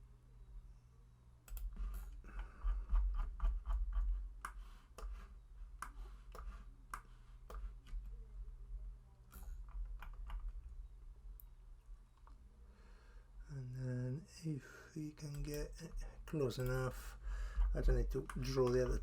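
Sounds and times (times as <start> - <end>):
low steady hum: 0.0 - 19.0
mouse and keyboard clicking: 1.5 - 8.1, 18.1 - 19.0.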